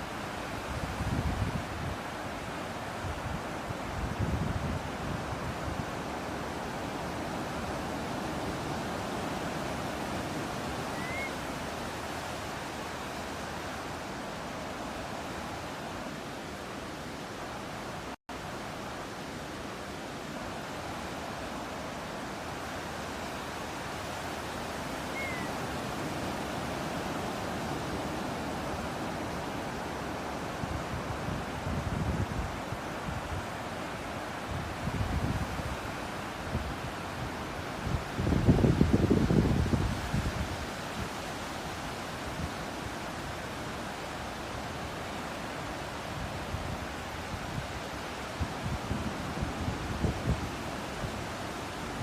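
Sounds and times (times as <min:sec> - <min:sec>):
ocean surf and breeze: 0:00.0 - 0:52.0
seaside wind: 0:00.0 - 0:52.0
wind gusts buffeting microphone: 0:00.6 - 0:02.2, 0:02.9 - 0:11.8, 0:24.9 - 0:41.2, 0:46.0 - 0:52.0
faint bird chirp: 0:10.9 - 0:11.4, 0:25.0 - 0:25.6.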